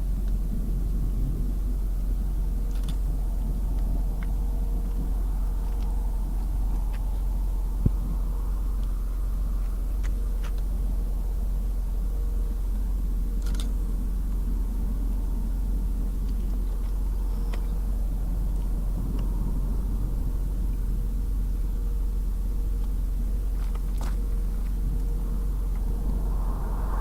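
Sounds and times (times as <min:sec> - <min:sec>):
car road and engine rumble: 0:00.0 - 0:27.0
faint steady hum: 0:00.0 - 0:27.0
faint ticks: 0:00.2 - 0:00.7, 0:02.6 - 0:10.9, 0:13.3 - 0:26.0.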